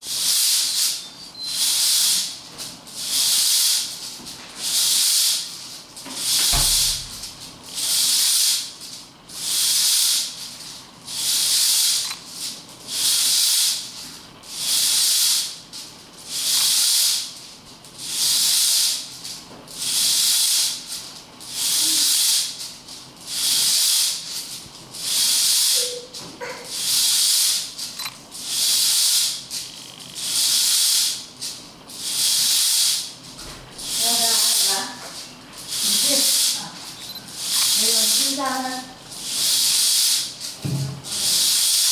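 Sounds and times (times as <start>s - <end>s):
hula hoop swishing: 33.8s - 41.9s
low thump: 40.6s - 41.1s.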